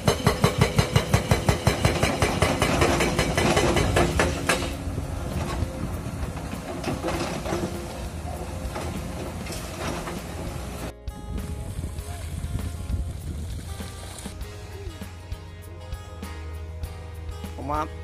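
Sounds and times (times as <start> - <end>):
hydraulic rock breaker hammering: 0.0 - 4.8
scattered knocks: 0.0 - 4.8
excavator engine running: 0.0 - 15.0.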